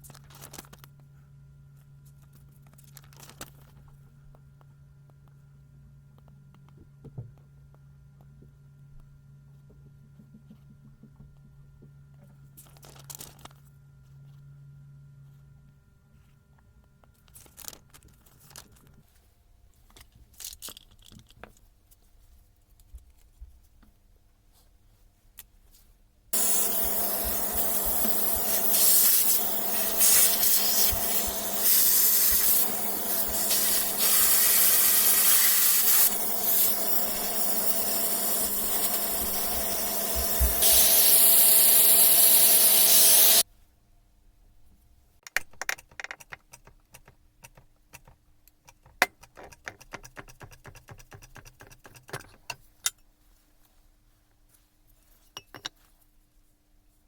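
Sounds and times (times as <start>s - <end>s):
pressurised jet hissing: 26.4s - 43.4s.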